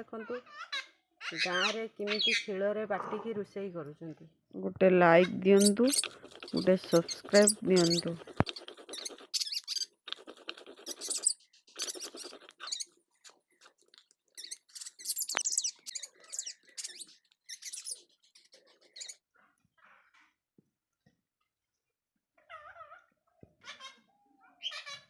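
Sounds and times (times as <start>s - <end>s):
stone scraping on stone: 5.5s - 12.9s, 14.4s - 18.0s
small clicks: 13.7s - 16.0s.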